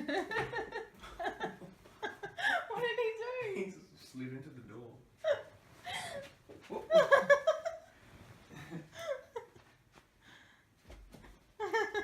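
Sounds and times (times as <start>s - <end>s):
people laughing and giggling: 0.0s - 2.9s, 5.9s - 7.9s, 11.6s - 12.0s.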